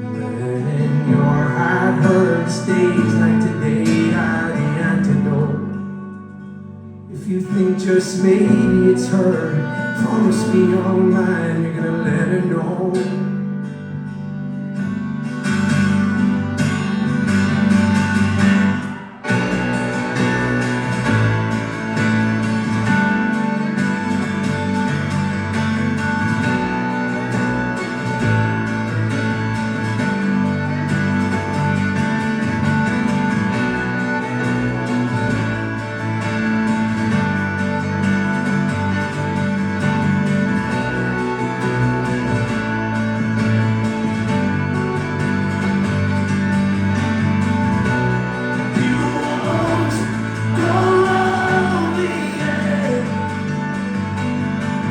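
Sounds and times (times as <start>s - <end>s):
electric guitar: 0.0s - 54.9s
live rock band playing: 14.6s - 54.9s.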